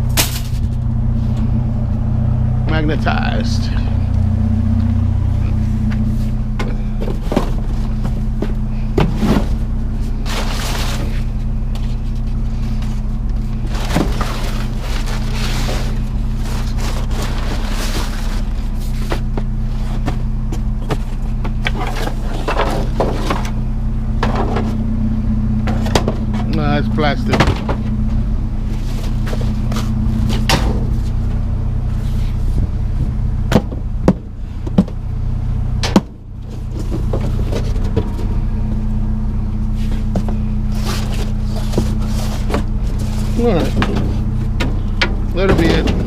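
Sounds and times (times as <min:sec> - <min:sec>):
vehicle engine idling: 0:00.0 - 0:46.0
junk knocking and clattering: 0:02.7 - 0:31.6, 0:32.6 - 0:38.8, 0:40.0 - 0:46.0.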